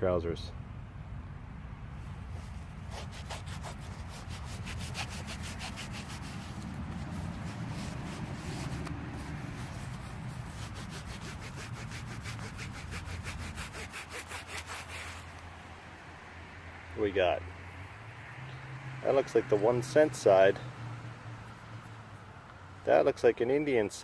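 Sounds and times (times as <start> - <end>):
coin rubbed on fabric: 2.0 - 15.4.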